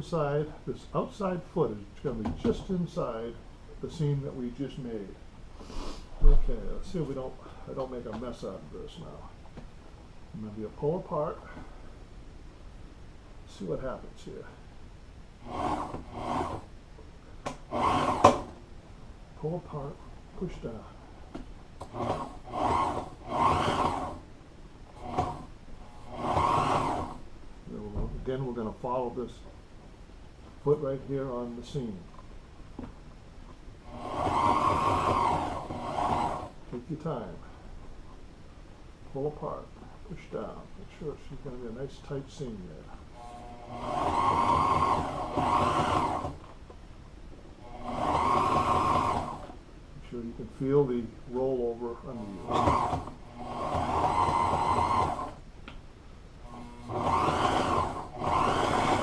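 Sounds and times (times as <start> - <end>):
sewing machine stitching: 15.4 - 16.7, 17.5 - 18.6, 21.8 - 24.2, 24.9 - 27.2, 33.8 - 36.6, 43.2 - 46.5, 47.6 - 49.6, 52.1 - 55.4, 56.4 - 59.0.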